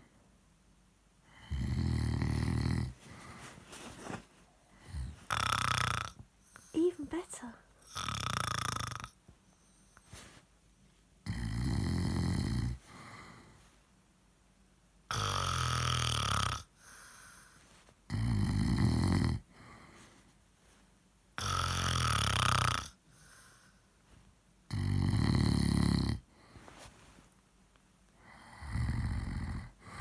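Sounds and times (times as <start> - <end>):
quiet breathing out: 1.2 - 8.0, 12.7 - 13.9, 16.7 - 18.0, 19.4 - 20.9, 23.0 - 24.2, 26.2 - 27.3, 28.2 - 30.0
man snoring heavily: 1.4 - 2.9, 4.9 - 6.2, 7.9 - 9.1, 11.3 - 12.8, 15.1 - 16.7, 18.1 - 19.4, 21.4 - 23.0, 24.7 - 26.2, 28.3 - 30.0.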